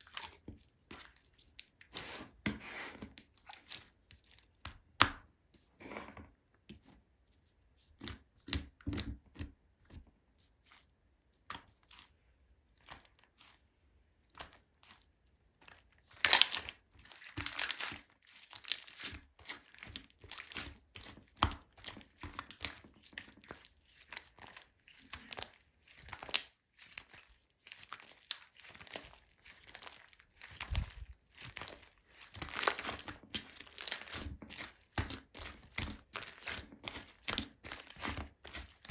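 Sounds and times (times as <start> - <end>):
slime squeezed by hand: 24.0 - 38.9.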